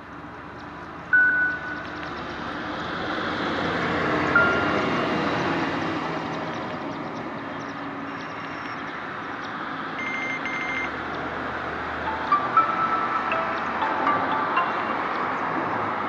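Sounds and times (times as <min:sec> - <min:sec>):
ringtone from small phone speaker: 0:01.2 - 0:01.8, 0:04.4 - 0:04.9, 0:12.1 - 0:15.4
short high beeps: 0:01.2 - 0:01.8, 0:10.0 - 0:10.9.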